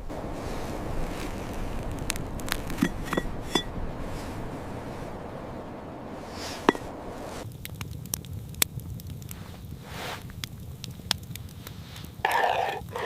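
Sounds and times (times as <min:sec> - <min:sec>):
steady background hiss: 0:00.0 - 0:13.0.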